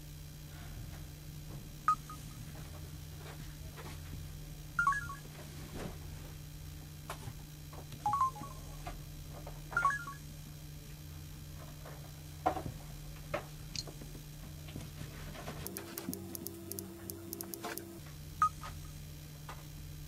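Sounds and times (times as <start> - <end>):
steady low hum: 0.0 - 20.0
mobile phone key-press beeps: 1.9 - 2.2, 4.8 - 5.2, 8.1 - 8.5, 9.8 - 10.2.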